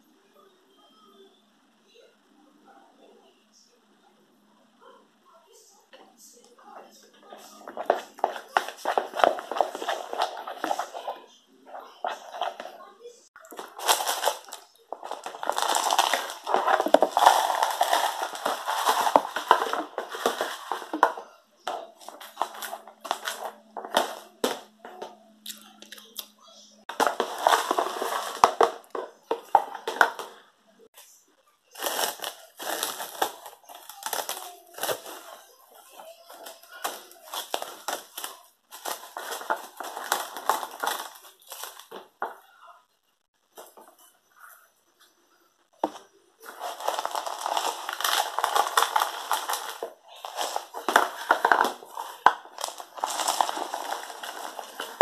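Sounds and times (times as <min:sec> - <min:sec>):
crunching and crushing: 0:07.2 - 0:30.4, 0:31.7 - 0:42.5, 0:45.8 - 0:55.0.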